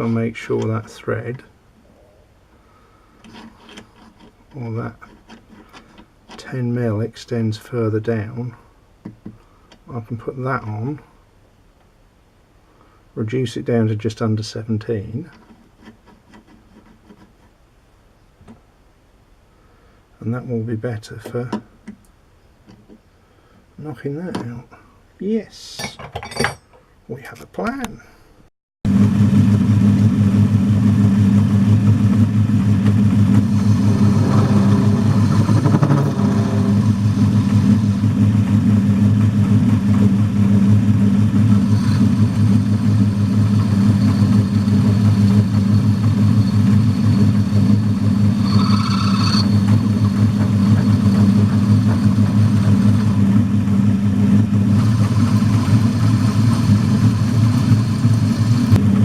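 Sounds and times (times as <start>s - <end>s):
lathe humming: 28.9s - 58.9s
short high squeal: 33.4s - 38.1s, 41.5s - 53.0s.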